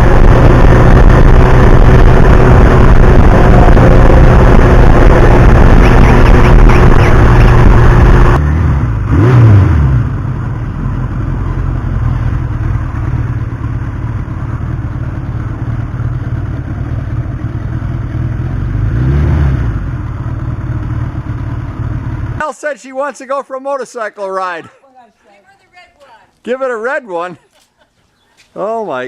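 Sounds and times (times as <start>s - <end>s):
motorcycle engine running: 0.0s - 22.4s.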